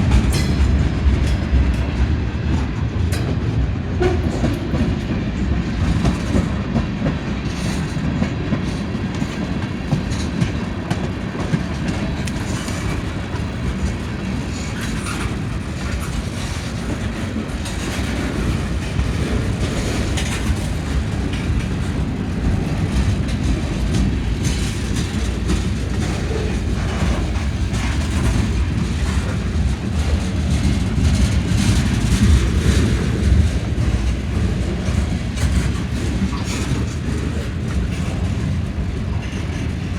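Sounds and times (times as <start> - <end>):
freight train rumble: 0.0 - 39.9
train wheels clacking over rail joints: 0.0 - 39.9.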